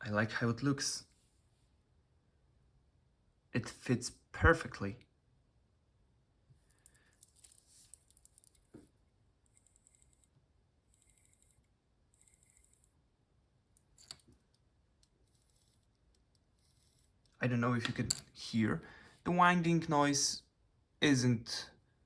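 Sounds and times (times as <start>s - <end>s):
watch winding clicks: 9.5s - 10.3s, 10.9s - 12.9s.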